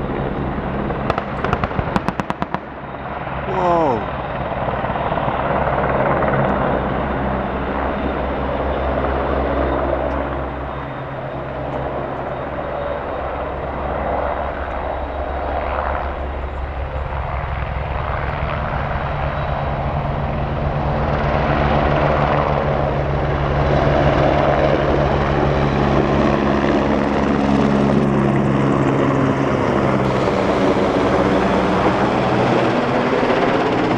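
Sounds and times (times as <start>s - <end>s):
helicopter flying overhead: 0.0s - 33.9s.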